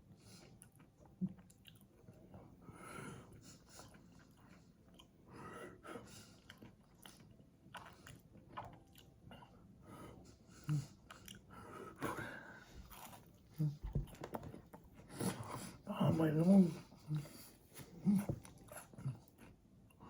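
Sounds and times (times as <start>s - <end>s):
sticky chewing noises: 6.3s - 9.6s, 12.8s - 15.3s.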